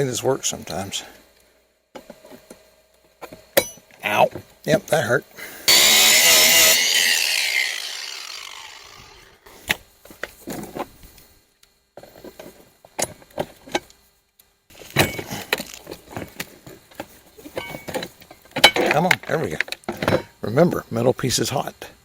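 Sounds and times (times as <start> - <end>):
angle grinder winding down: 5.7 - 9.6.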